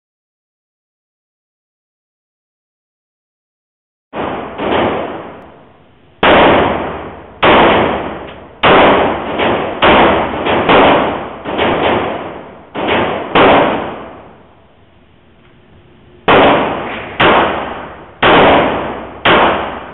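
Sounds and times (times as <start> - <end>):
pistol shots with reverberant decay: 4.2 - 5.6, 6.2 - 14.8, 16.2 - 19.9.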